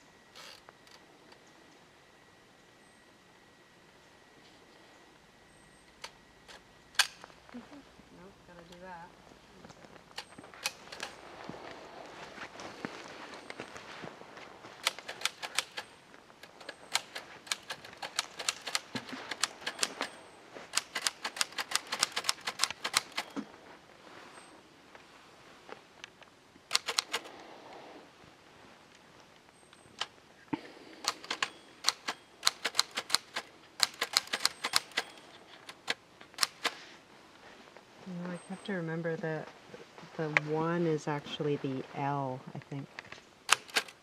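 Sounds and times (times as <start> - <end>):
manual typewriter keystrokes: 14.8 - 23.4, 26.7 - 27.3, 31.0 - 36.8, 43.5 - 44.0.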